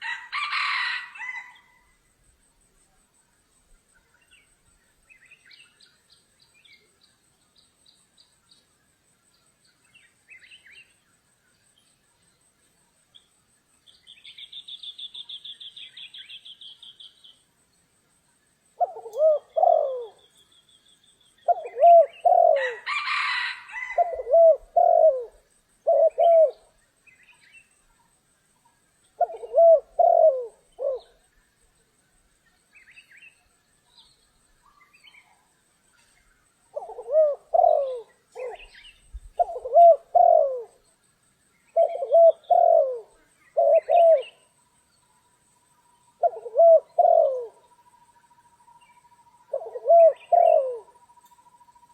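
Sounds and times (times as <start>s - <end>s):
doves cooing: 18.8s - 20.2s, 21.4s - 26.8s, 29.2s - 31.3s, 36.7s - 40.8s, 41.7s - 44.5s, 46.2s - 47.8s, 49.4s - 51.0s.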